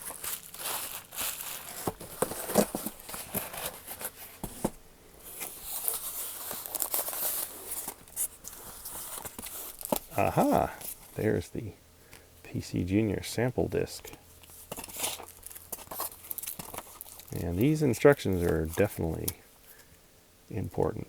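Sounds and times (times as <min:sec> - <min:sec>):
packaging crinkling and rustling: 0:00.0 - 0:11.2, 0:14.0 - 0:19.9.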